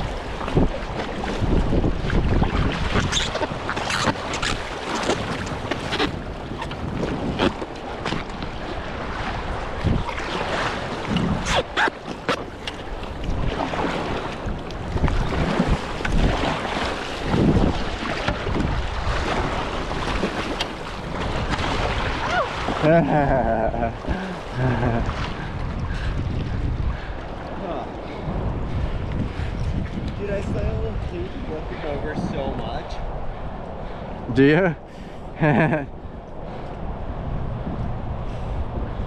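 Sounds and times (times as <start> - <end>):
sharp water splashes: 0.0 - 23.2
wind buffeting microphone: 0.0 - 39.0
river water rushing: 7.5 - 23.2.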